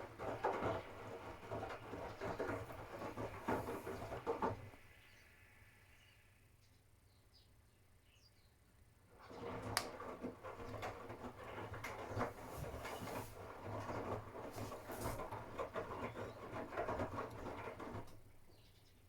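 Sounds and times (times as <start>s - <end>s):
washing machine motor hum: 0.0s - 4.7s, 9.2s - 18.1s
laundry tumbling and sloshing: 0.0s - 4.8s, 9.2s - 18.2s.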